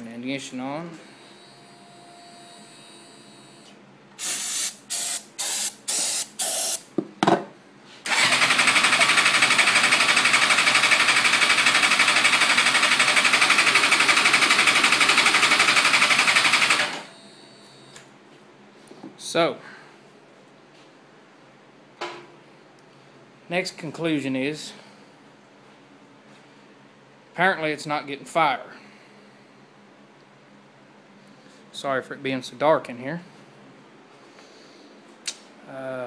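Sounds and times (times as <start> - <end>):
electric starter cranking engine: 8.0 - 17.1.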